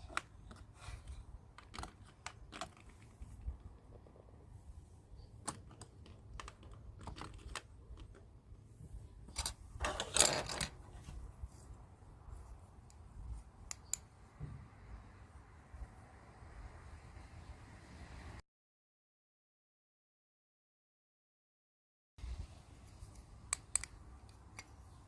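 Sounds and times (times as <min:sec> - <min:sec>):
plastic toy pieces clicking: 0:05.4 - 0:08.2.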